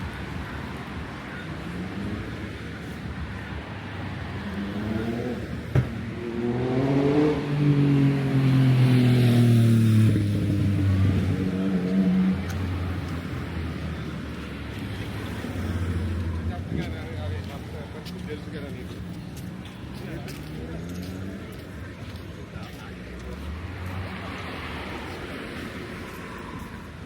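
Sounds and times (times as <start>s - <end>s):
steady traffic noise: 0.0s - 27.0s
vehicle engine passing by: 4.1s - 13.9s.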